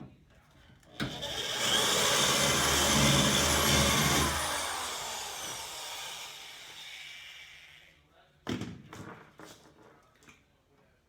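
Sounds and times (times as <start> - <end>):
power cutting tool whining: 1.0 - 7.8.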